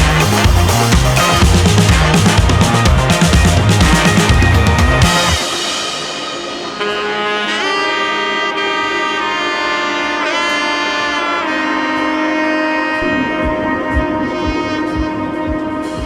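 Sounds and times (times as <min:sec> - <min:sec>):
saxophone sustained notes: 0:00.0 - 0:16.0
soft accompaniment: 0:00.0 - 0:16.0.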